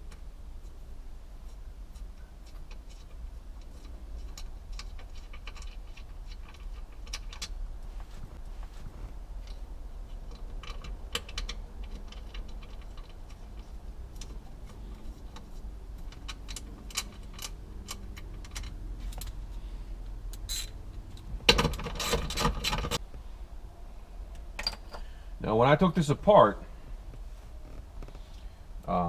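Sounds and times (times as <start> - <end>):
small parts clicking and rattling: 1.5 - 7.6, 9.3 - 19.5, 20.3 - 23.0.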